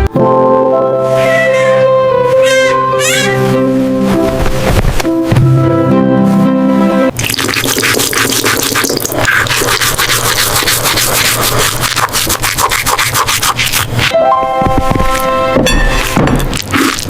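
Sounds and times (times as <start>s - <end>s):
scratchy scraping noise: 7.5s - 14.2s
pitched music: 14.1s - 16.9s.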